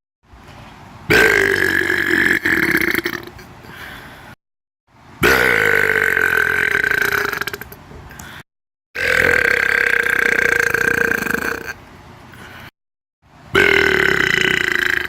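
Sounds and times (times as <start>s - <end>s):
person burping: 1.1s - 3.5s, 5.2s - 7.8s, 9.0s - 11.8s, 13.5s - 15.0s.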